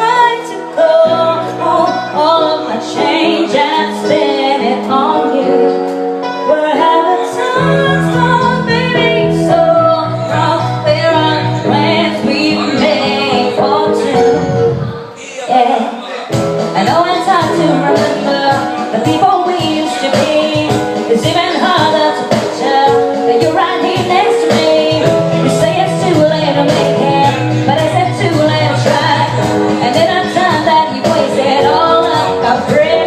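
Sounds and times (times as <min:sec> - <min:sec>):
instrumental backing track: 0:00.0 - 0:33.0
woman singing pop song: 0:00.0 - 0:33.0
deep bass part: 0:07.9 - 0:15.0.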